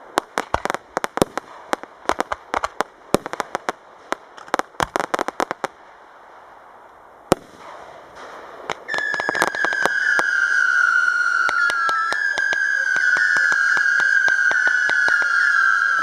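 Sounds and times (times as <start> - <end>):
firecracker bangs: 0.0 - 5.9, 7.3 - 16.0
falling firework whistle: 7.4 - 16.0.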